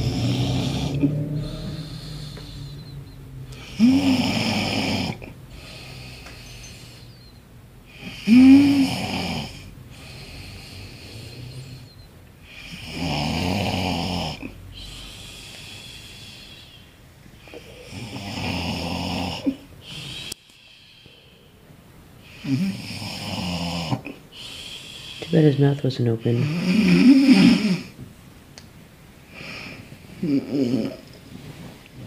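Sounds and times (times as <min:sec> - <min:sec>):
man snoring loudly: 0:00.0 - 0:07.0, 0:07.9 - 0:11.9, 0:12.5 - 0:16.8, 0:17.5 - 0:20.4, 0:22.3 - 0:25.5, 0:26.4 - 0:28.0, 0:30.2 - 0:31.0
quiet breathing: 0:00.0 - 0:13.0, 0:13.6 - 0:28.0.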